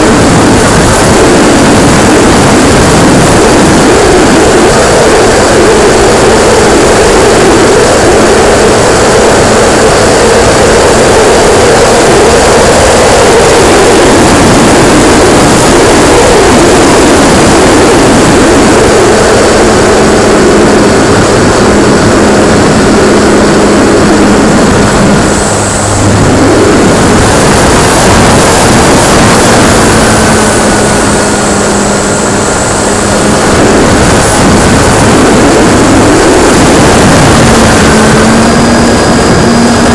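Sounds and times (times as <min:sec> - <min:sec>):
loud wind rush: 0:00.0 - 0:39.9
model plane motor and propeller: 0:00.0 - 0:39.9.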